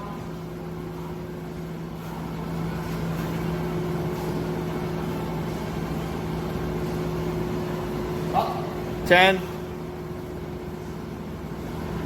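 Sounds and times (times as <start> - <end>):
steady mechanical hum: 0.0 - 12.0.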